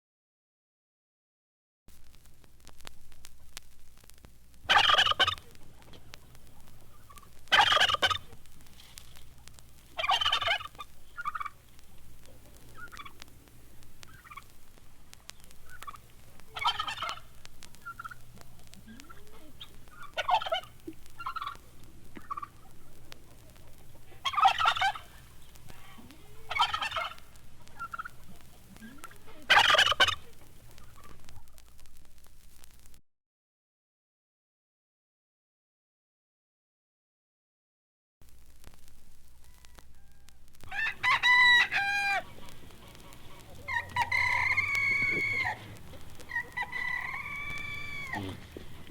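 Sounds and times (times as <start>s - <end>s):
faint low hum: 1.9s - 33.0s
turkeys gobbling: 4.7s - 31.8s, 39.4s - 48.9s
soft turkey calls: 4.7s - 31.9s, 39.2s - 48.9s.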